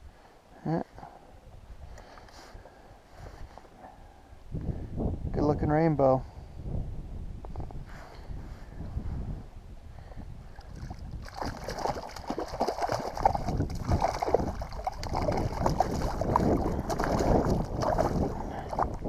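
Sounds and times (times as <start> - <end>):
water splashing against kayak: 10.6 - 19.0.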